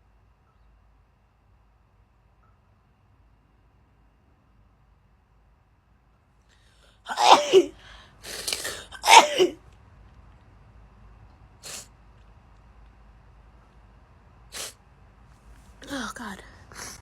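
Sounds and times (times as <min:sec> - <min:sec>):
girl sneezing: 0:07.1 - 0:09.6.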